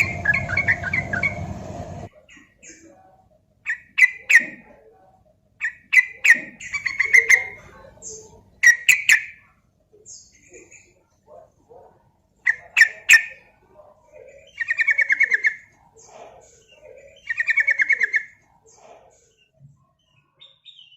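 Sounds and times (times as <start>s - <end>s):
bird chirping bubbly notes: 0.0s - 2.1s.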